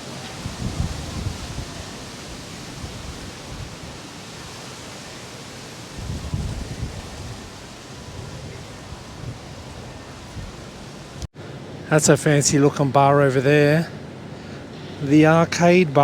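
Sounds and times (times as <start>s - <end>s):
storm wind on microphone: 0.0s - 4.6s, 5.8s - 11.3s.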